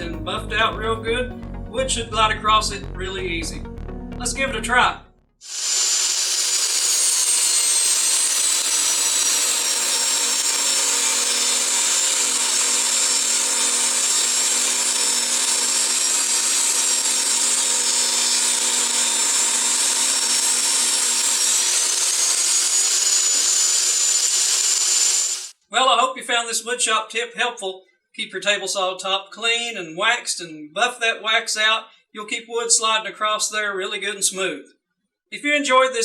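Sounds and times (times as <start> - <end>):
table saw cutting wood: 5.4 - 25.5.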